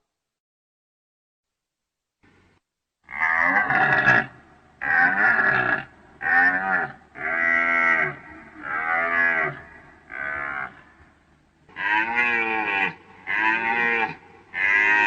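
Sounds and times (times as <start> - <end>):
deer bellowing: 3.0 - 15.0.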